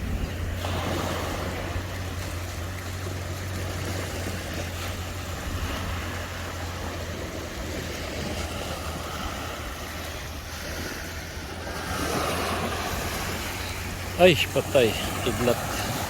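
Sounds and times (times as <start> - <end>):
sea surf rushing: 0.0 - 16.0
wind rumbling on microphone: 0.0 - 16.0.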